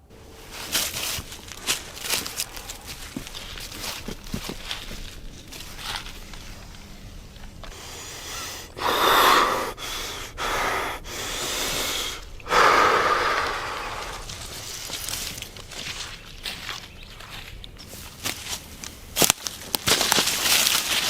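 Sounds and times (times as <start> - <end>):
person breathing heavily: 6.2 - 15.1.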